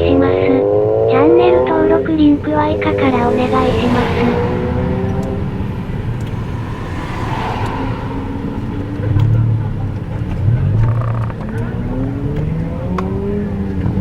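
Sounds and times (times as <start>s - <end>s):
car engine droning while driving: 0.0s - 14.0s.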